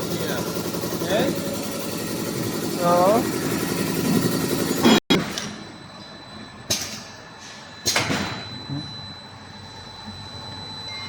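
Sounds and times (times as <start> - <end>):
faint machine hum: 0.0 - 11.0
thin high whine: 4.1 - 11.0.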